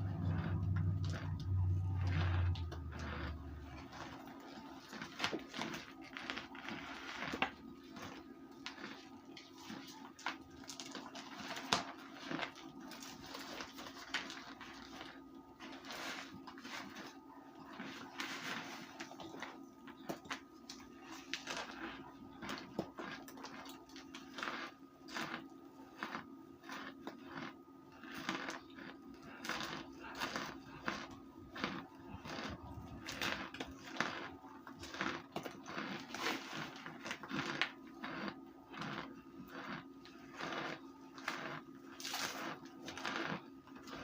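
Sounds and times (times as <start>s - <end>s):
crunching and chewing: 0.0s - 44.0s.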